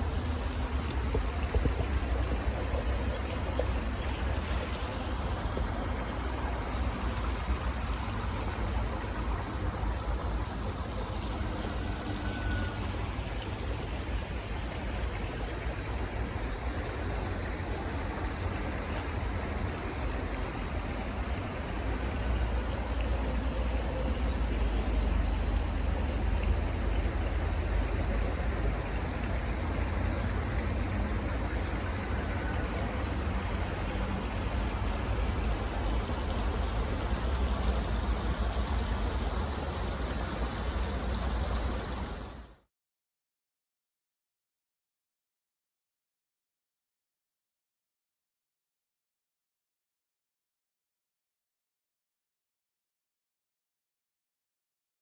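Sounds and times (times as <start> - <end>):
deep outdoor rumble: 0.0 - 12.1.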